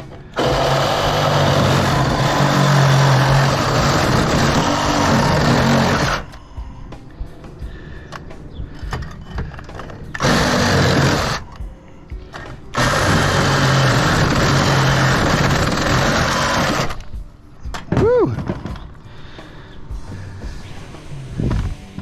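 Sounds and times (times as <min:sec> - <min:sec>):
handheld power tool running: 0:00.4 - 0:06.4, 0:10.1 - 0:11.5, 0:12.7 - 0:17.0.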